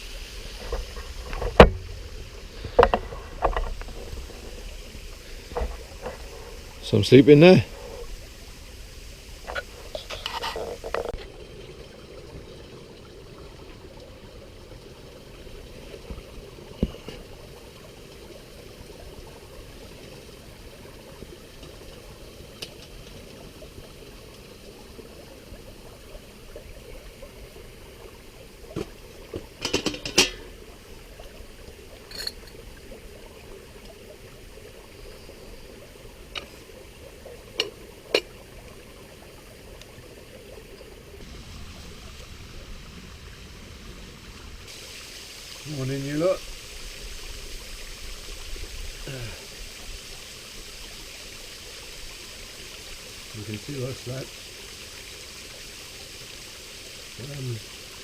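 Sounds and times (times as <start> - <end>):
river running over rocks: 0.0 - 58.0
sharp clicks and knocks: 28.8 - 30.5.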